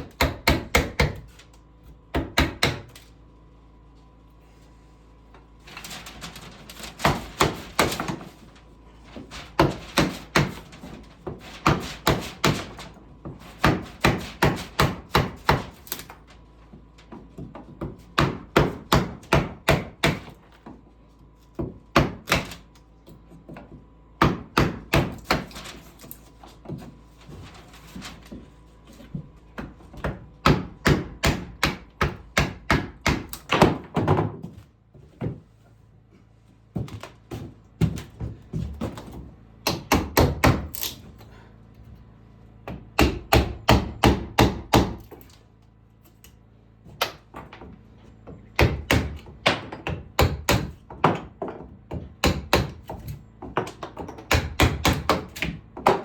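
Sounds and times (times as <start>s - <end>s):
hammer striking wood: 0.0s - 1.2s, 2.1s - 3.0s, 9.6s - 10.7s, 11.3s - 12.8s, 13.6s - 15.8s, 17.4s - 20.4s, 21.6s - 22.6s, 24.2s - 25.6s, 29.6s - 34.5s, 39.6s - 40.8s, 42.6s - 45.2s, 48.6s - 56.0s.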